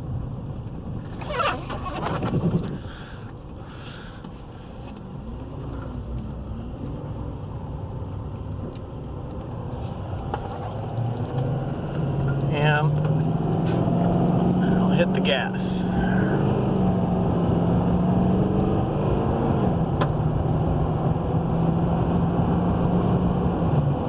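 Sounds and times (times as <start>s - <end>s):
truck road noise: 0.0s - 24.0s
brake squeal: 1.0s - 4.9s, 9.7s - 16.8s.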